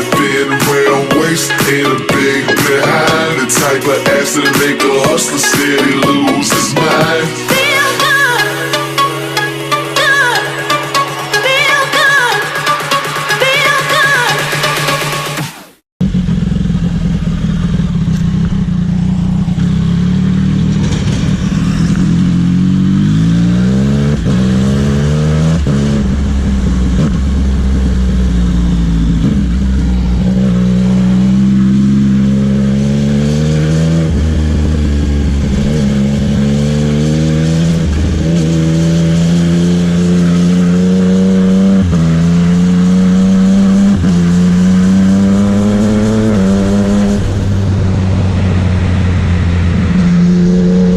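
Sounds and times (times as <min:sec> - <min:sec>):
motorcycle engine accelerating: 0:00.0 - 0:50.9
wind and road noise: 0:16.0 - 0:50.9.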